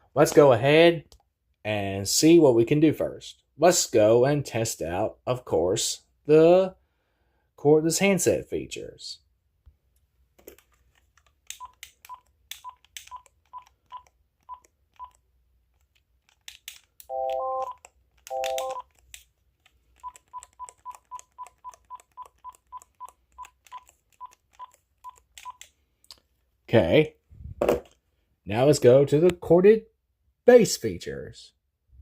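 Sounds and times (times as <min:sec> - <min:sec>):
phone key clicks and beeps: 0:11.5 - 0:15.2, 0:17.1 - 0:19.0, 0:20.0 - 0:25.7
multi-note phone tones: 0:17.1 - 0:18.9.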